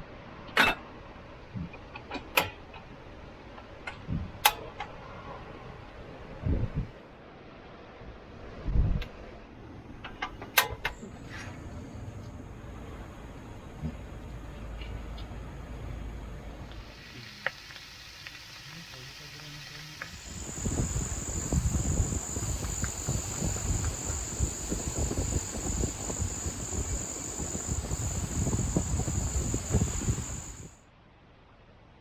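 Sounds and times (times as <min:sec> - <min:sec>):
wind buffeting microphone: 0:06.4 - 0:07.0, 0:20.2 - 0:30.8
insects chirring: 0:16.7 - 0:30.8.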